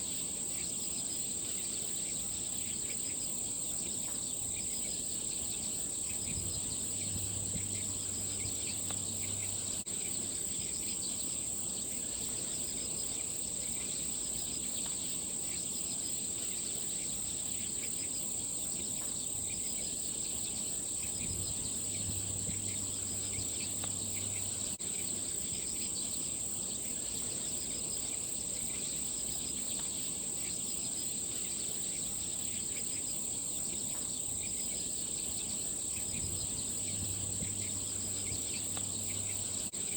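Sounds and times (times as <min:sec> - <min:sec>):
faint insect chirps: 0:00.0 - 0:39.9
insects trilling: 0:00.0 - 0:39.9.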